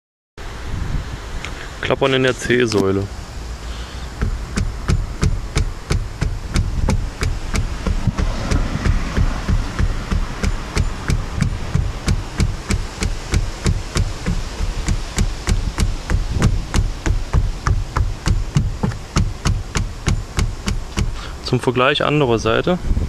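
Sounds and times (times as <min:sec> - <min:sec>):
loose car part rattling: 0:03.7 - 0:21.5.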